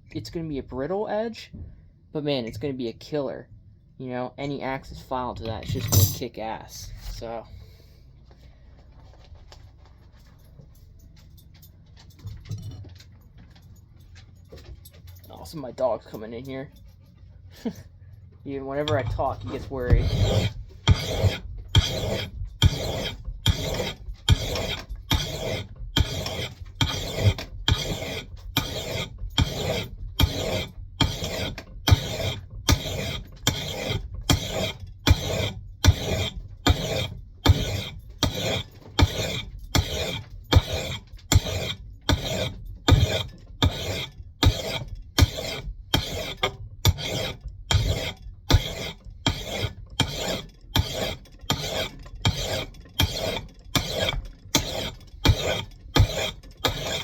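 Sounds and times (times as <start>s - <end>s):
file rasping on steel: 18.6s - 57.0s.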